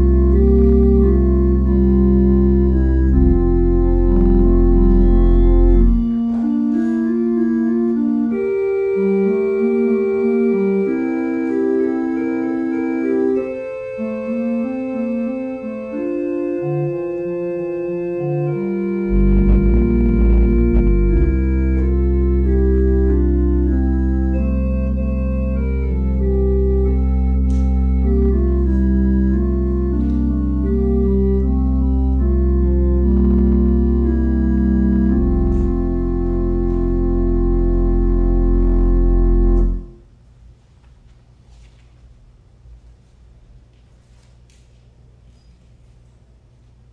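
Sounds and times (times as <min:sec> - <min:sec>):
organ playing slow chords: 0:00.0 - 0:40.1.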